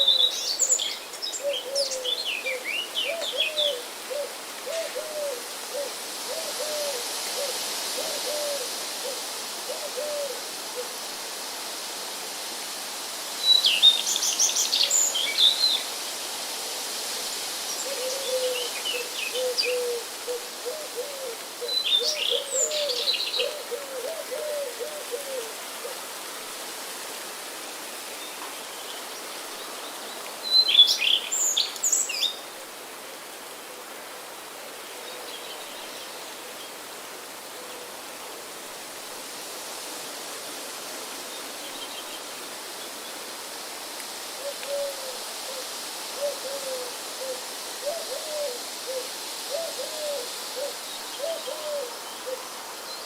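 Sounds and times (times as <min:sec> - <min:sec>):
songbirds chirping: 0:00.0 - 0:05.7
bird low hooting call: 0:01.4 - 0:10.4.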